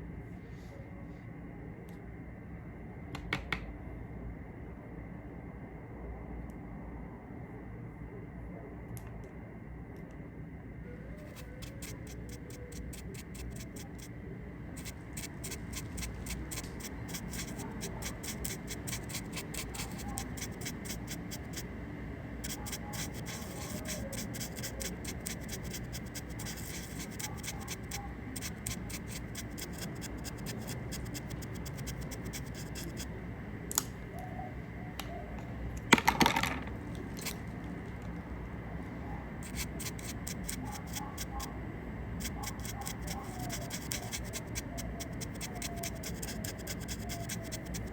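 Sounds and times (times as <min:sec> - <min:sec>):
light scratching and stroking: 0:14.8 - 0:21.6, 0:22.4 - 0:33.1, 0:42.2 - 0:47.9
knock and clatter: 0:35.9 - 0:36.7.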